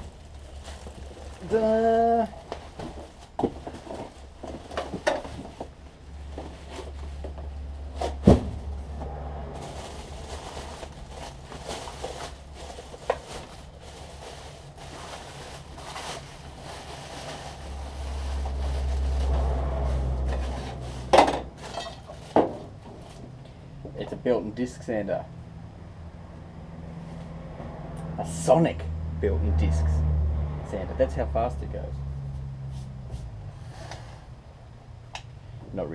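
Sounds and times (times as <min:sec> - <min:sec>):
knocks and clicks of packaging: 0:02.4 - 0:08.6, 0:11.2 - 0:13.6, 0:20.2 - 0:23.2
steady low rumble: 0:05.4 - 0:30.0.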